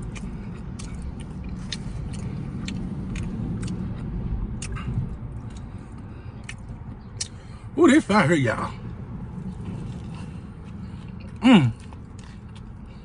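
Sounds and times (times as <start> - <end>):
chewing food: 0.0 - 7.5, 9.5 - 13.0
low rumble: 0.0 - 7.7, 8.7 - 13.0
wet mouth clicks: 0.1 - 5.7, 6.4 - 7.4.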